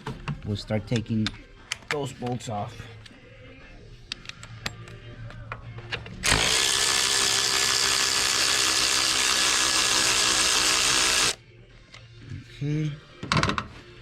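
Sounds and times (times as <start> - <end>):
power tool spinning bolt: 6.2 - 11.4.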